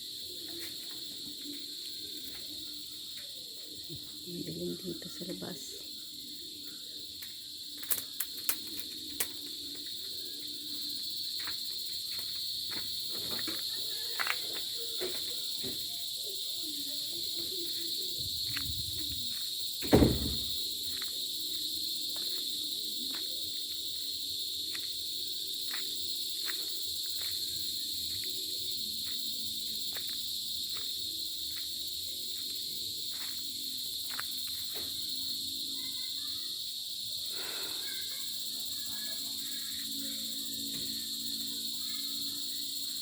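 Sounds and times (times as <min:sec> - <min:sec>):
crickets trilling: 0:00.0 - 0:43.0
loud thump: 0:19.8 - 0:20.6.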